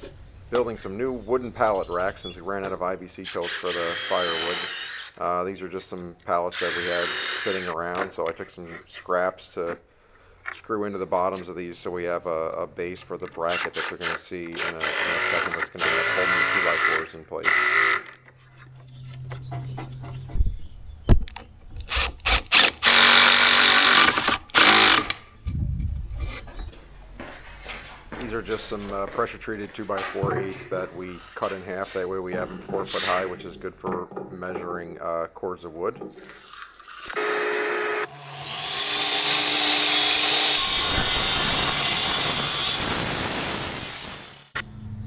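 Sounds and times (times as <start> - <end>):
power drill driving screws: 3.3 - 5.2, 6.5 - 7.8, 13.4 - 18.2, 21.8 - 25.2, 36.2 - 44.6.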